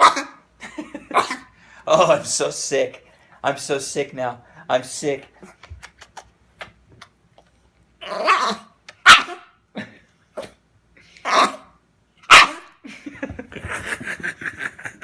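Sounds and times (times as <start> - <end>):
dog coughing: 0.0 - 0.4, 1.1 - 1.5.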